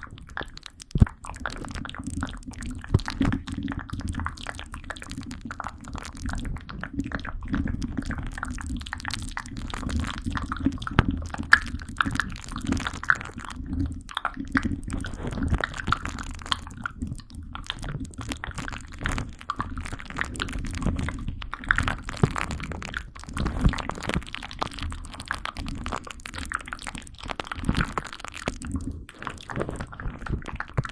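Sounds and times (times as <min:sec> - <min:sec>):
small wet clicks and crackles: 0:00.0 - 0:30.9.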